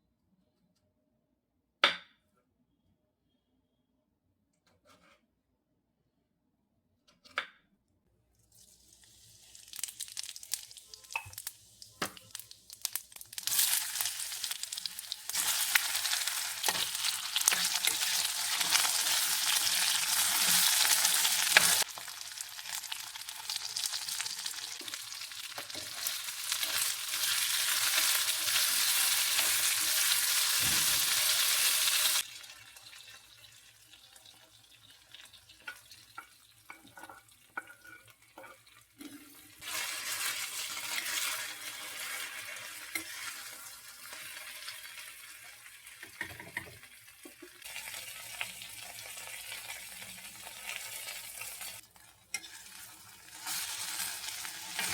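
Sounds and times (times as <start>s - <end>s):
food sizzling in a pan: 8.5s - 54.9s
stirring scrapes and taps: 36.7s - 39.2s.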